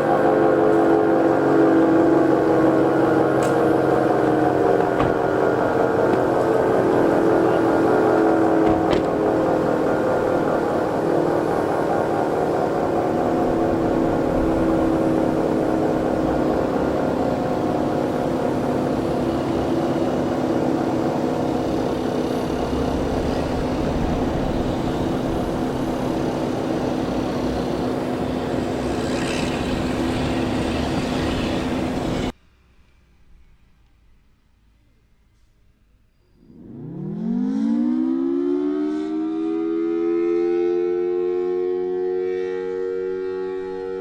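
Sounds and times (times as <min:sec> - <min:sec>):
tornado warning siren steady tone: 0:00.0 - 0:32.3, 0:36.5 - 0:44.0
rumbling background: 0:02.0 - 0:10.4.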